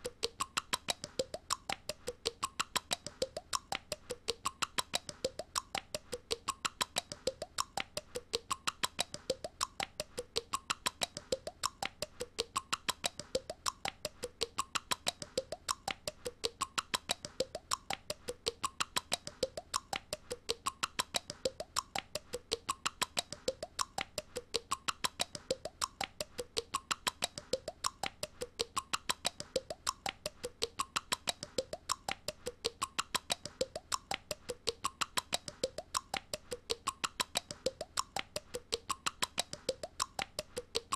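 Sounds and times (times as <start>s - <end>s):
girl clicking with mouth: 0.0s - 40.9s.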